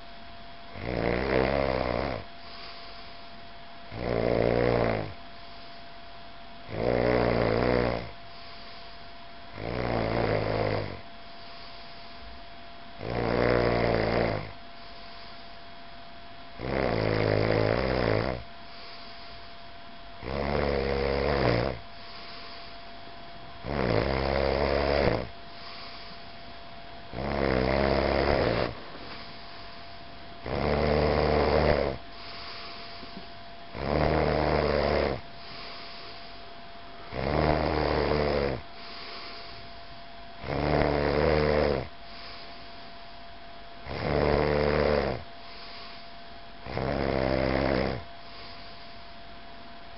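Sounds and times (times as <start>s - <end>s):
person snoring: 0.7s - 3.2s, 3.9s - 5.2s, 6.7s - 8.8s, 9.5s - 12.0s, 13.0s - 14.6s, 16.6s - 19.4s, 20.2s - 22.8s, 23.6s - 26.3s, 27.1s - 36.4s, 37.0s - 39.7s, 40.4s - 42.7s, 43.8s - 48.9s
quiet breathing: 1.1s - 16.6s, 17.7s - 49.6s.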